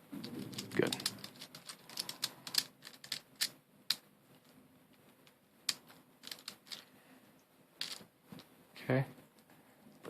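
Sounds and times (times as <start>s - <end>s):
plastic puzzle pieces clicking: 0.2s - 4.5s, 5.7s - 6.9s, 7.8s - 8.0s.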